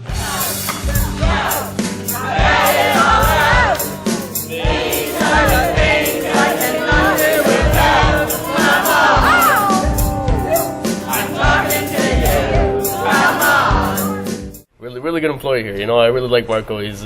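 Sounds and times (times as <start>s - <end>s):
band with drums: 0.0s - 14.6s
group of voices singing: 0.0s - 14.6s.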